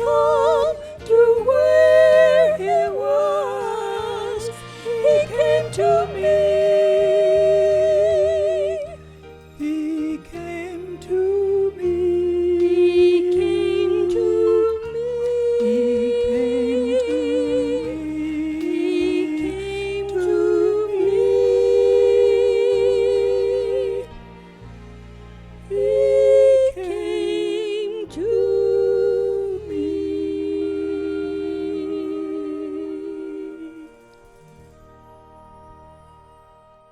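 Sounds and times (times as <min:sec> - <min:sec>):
soft sustained low chords: 0:00.0 - 0:36.9.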